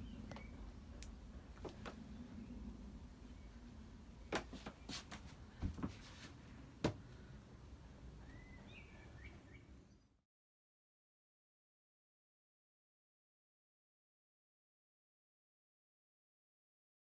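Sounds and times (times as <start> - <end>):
faint low hum: 0.0 - 10.2
faint bird chirps: 8.2 - 10.2.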